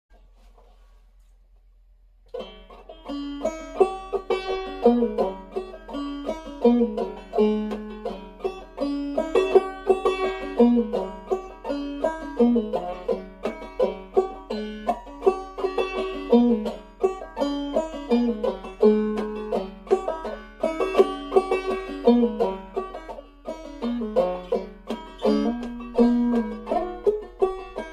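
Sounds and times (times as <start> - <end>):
banjo playing fiddle tune: 2.3 - 27.9.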